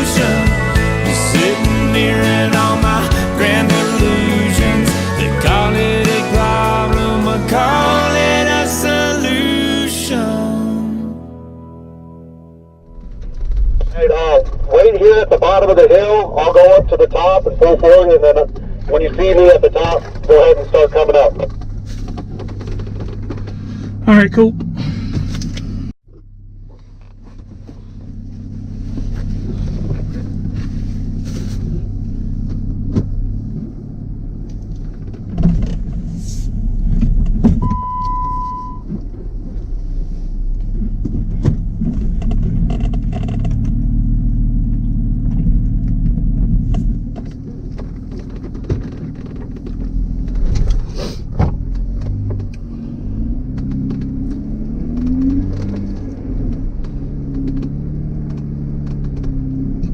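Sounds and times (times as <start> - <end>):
engine rumbling under load: 0.0 - 59.9
knocks and clatters: 21.3 - 24.0, 34.5 - 36.1, 44.7 - 52.7
single beep: 37.6 - 38.9.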